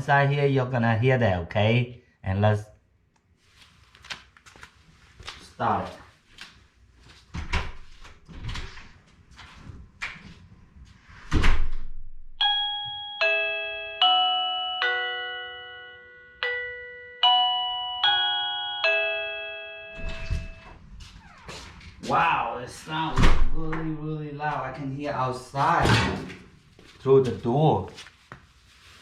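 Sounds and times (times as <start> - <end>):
doorbell chime tune: 12.4 - 20.8
door shutting thump: 20.0 - 21.6, 23.1 - 23.9, 25.8 - 26.4.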